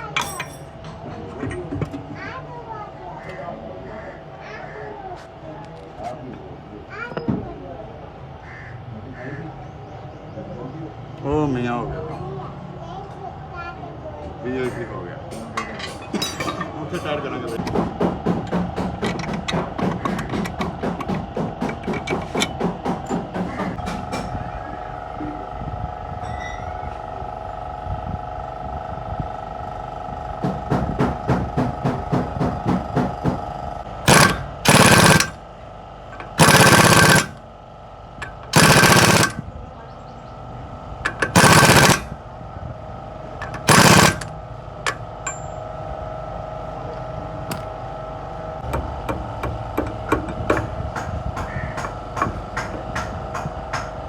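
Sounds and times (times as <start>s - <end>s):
steady machine hum: 14.4s - 54.0s
metal knocking: 14.7s - 24.4s, 34.1s - 35.4s, 36.2s - 37.4s, 38.2s - 39.4s, 48.7s - 54.0s
air tool bursts: 34.1s - 35.4s, 36.4s - 37.4s, 38.5s - 39.4s, 41.3s - 42.1s, 43.7s - 44.3s.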